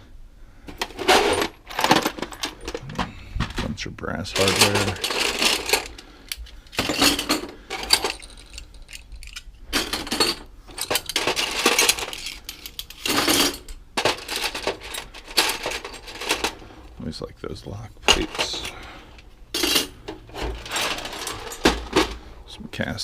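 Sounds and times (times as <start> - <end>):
brass hardware clinking: 18.1 - 22.3.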